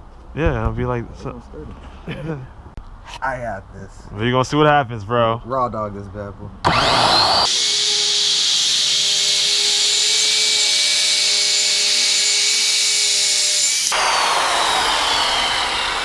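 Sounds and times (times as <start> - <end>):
circular saw cutting wood: 6.7 - 16.0
saw blade winding down: 6.7 - 16.0.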